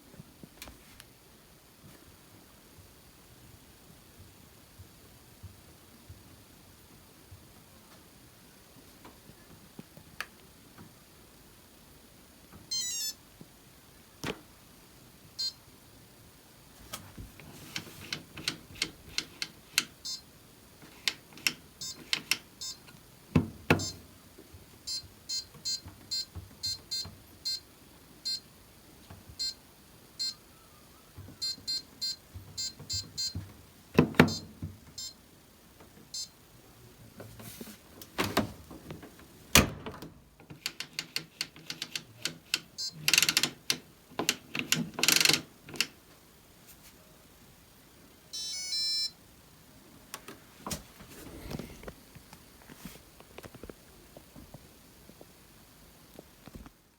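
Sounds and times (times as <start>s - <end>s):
short high beeps: 48.4s - 49.2s.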